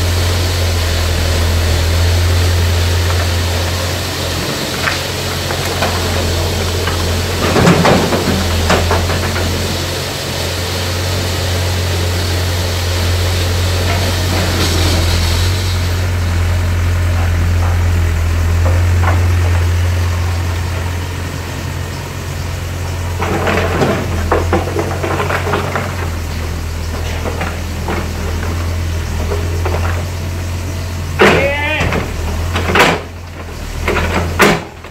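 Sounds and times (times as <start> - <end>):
excavator diesel engine running: 0.0 - 34.9
knocks and scrapes: 23.2 - 30.2.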